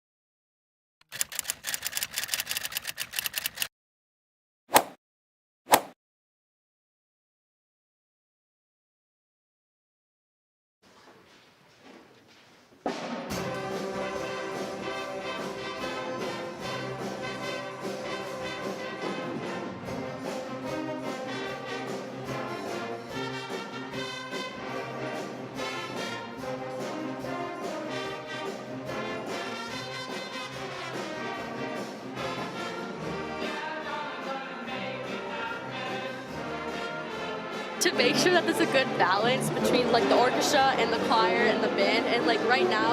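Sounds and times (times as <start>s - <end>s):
rapid clicking: 1.0s - 3.7s
brass instruments: 12.9s - 42.9s
orchestra and band playing: 13.3s - 42.9s.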